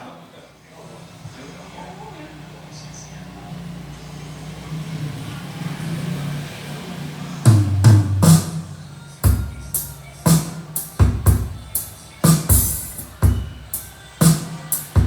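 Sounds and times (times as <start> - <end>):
drum-heavy music with deep bass: 7.5 - 15.0.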